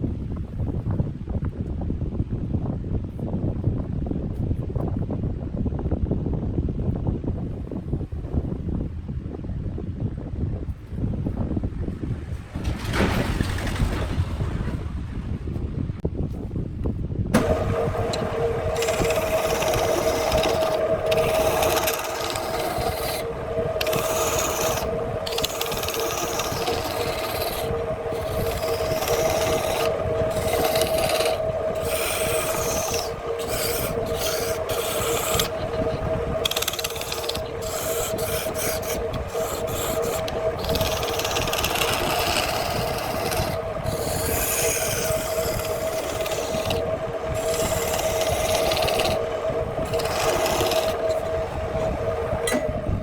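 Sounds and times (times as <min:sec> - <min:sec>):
lathe motor hum: 0:17.4 - 0:53.0
tool scraping spinning wood: 0:17.4 - 0:53.0.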